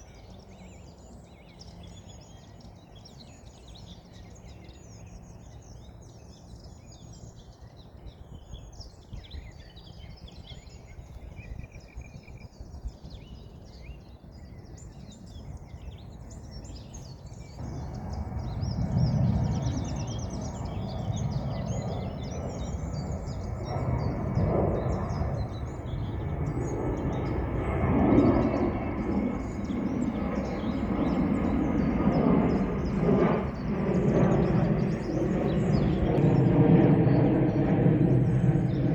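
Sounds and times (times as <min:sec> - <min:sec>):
songbirds chirping: 0:00.0 - 0:38.9
low steady rushing noise: 0:17.6 - 0:27.7.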